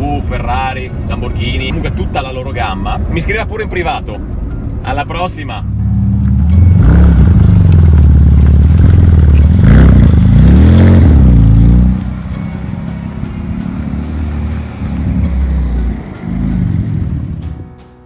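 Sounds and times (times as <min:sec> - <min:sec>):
car engine revving: 0:05.6 - 0:17.6.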